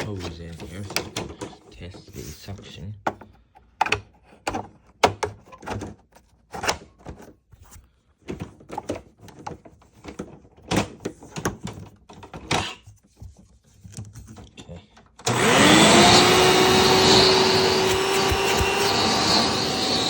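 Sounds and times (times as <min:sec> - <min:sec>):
plastic hose knocking and scraping: 0:00.0 - 0:14.6.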